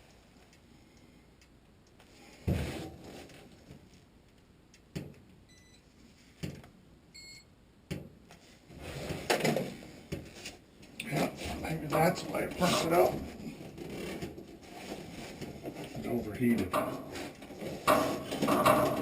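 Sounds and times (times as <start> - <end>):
faint electronic beeps: 5.5 - 5.9, 7.1 - 7.5.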